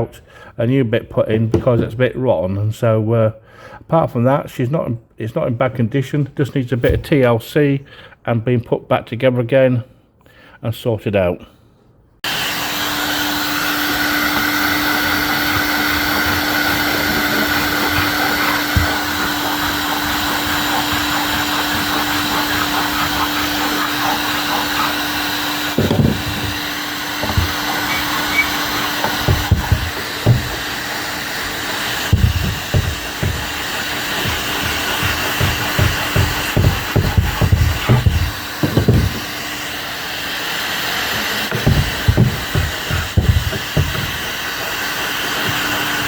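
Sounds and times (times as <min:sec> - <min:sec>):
power tool motor humming: 0:12.2 - 0:46.0
dull knocks and bumps: 0:14.4 - 0:30.9, 0:32.0 - 0:39.4, 0:41.5 - 0:44.3.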